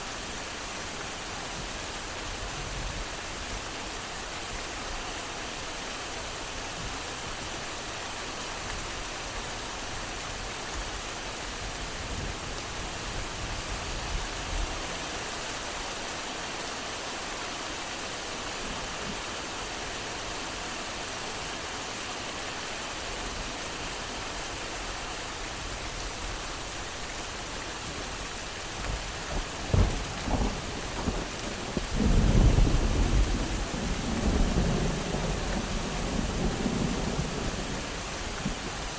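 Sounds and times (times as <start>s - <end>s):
steady rain falling: 0.0s - 38.9s
distant thunder rumbling: 28.6s - 38.9s
thunder cracks: 29.3s - 38.7s.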